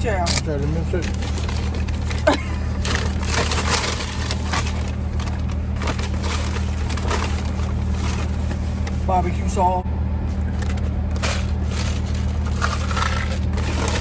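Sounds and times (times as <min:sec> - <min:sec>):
car interior hum: 0:00.0 - 0:14.0
packaging rustling: 0:00.5 - 0:09.5, 0:10.3 - 0:14.0
crunching food: 0:10.4 - 0:14.0.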